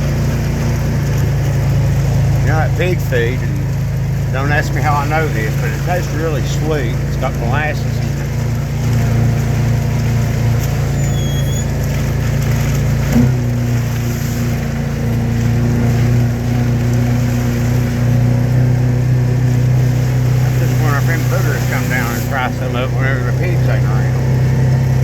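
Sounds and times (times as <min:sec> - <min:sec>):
small vehicle engine running: 0:00.0 - 0:25.0.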